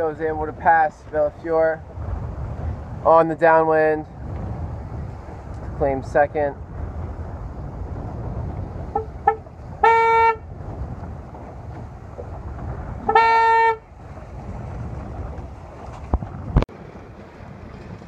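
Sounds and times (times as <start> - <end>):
water noise: 0.0 - 18.0
wind: 0.0 - 18.0
air horn blasts: 8.9 - 10.5, 13.0 - 13.8.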